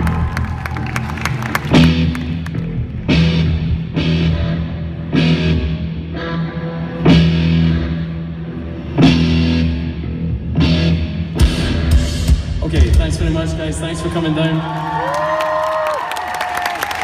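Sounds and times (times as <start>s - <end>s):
rock music with guitar and drums: 0.0s - 13.6s.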